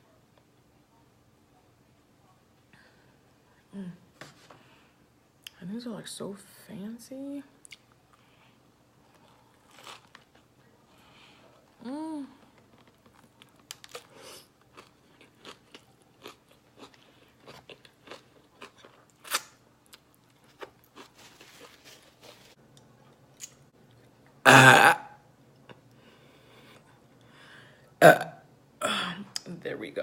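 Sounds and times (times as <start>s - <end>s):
crunching and chewing food: 7.6s - 24.4s.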